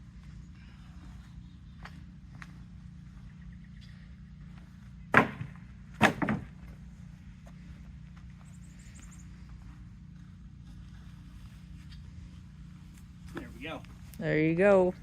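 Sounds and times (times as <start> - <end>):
engine idling: 0.0 - 15.0
low steady hum: 0.0 - 15.0
heavy wooden thuds: 5.1 - 6.8
logs clattering on wood cart: 5.1 - 6.8.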